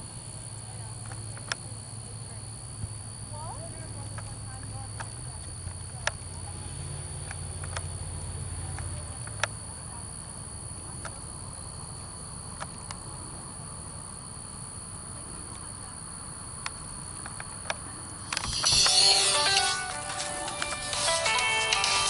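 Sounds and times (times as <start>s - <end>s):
crickets chirping: 0.0s - 22.0s
sharp clicks: 16.6s - 21.1s.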